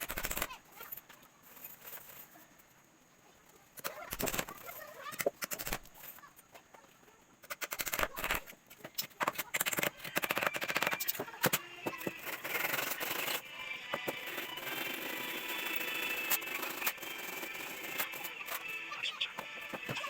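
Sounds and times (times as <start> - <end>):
sanding wood: 14.0 - 18.6.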